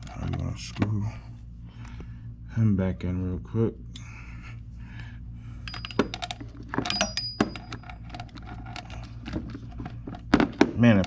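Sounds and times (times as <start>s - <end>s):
steady low hum: 0.0s - 11.0s
metal tools clinking and rattling: 5.6s - 11.0s.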